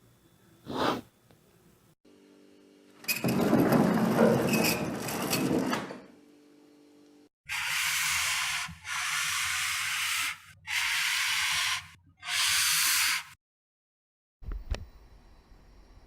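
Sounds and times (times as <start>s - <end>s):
slide whoosh hiss: 0.7s - 1.0s.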